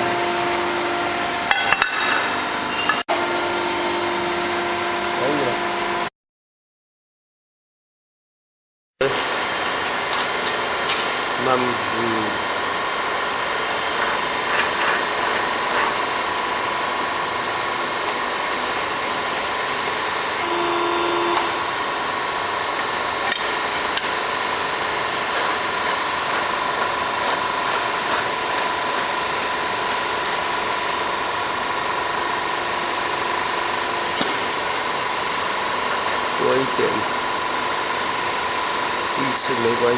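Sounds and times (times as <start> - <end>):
brief tone: 2.7 - 3.1, 20.4 - 22.0
tube-bending machine humming: 9.0 - 39.9.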